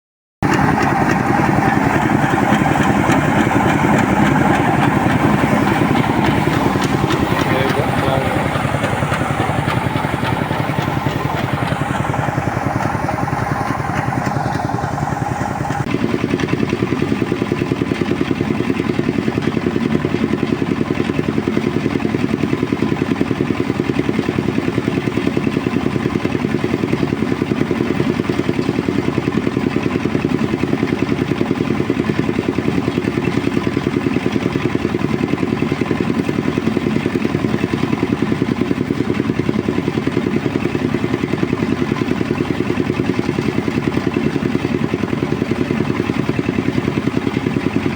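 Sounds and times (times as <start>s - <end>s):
high machine whine: 0.4s - 16.1s
threshing machine engine running: 0.4s - 47.9s.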